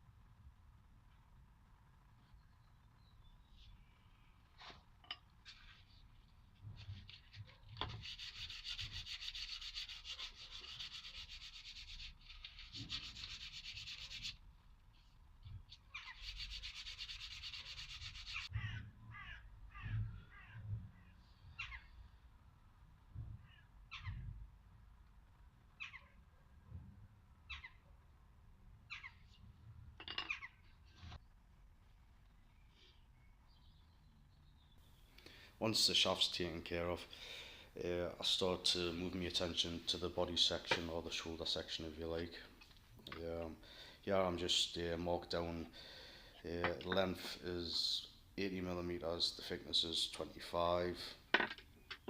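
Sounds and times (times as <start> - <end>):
sandpaper rubbing on wood: 7.8 - 14.4, 16.0 - 18.5.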